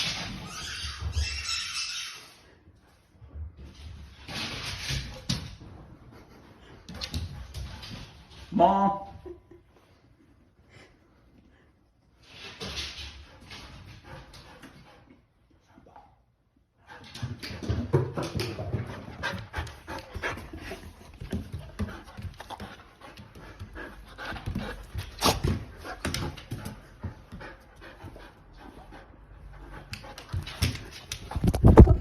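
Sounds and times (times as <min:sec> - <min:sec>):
dog panting: 0:18.8 - 0:31.6.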